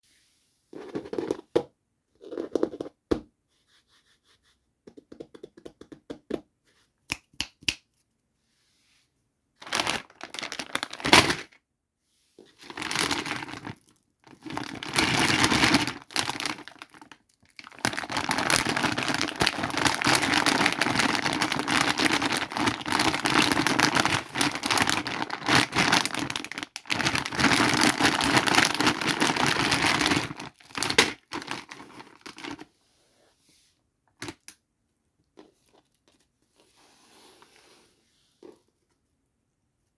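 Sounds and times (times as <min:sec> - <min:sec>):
packaging crinkling and tearing: 0:09.6 - 0:11.6, 0:12.6 - 0:32.6.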